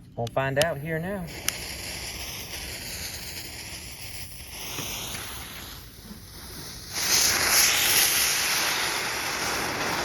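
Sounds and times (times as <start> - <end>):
firework fuse hissing: 0.5 - 10.0
firework loud hiss: 0.8 - 10.0.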